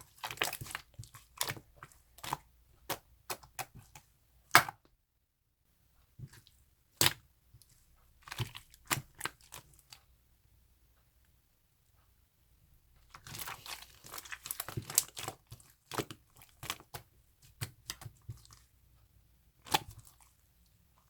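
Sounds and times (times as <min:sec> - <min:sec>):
sticky slime pops and crackles: 0:04.5 - 0:04.8.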